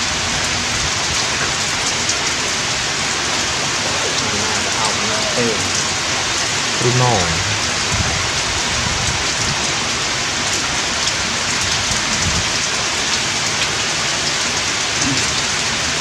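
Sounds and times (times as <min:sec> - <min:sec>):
steady rain hiss: 0:00.0 - 0:09.2.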